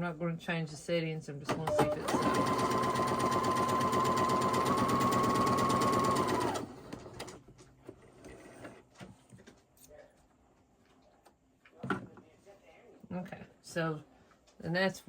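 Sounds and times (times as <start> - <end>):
sewing machine stitching: 1.5 - 7.4.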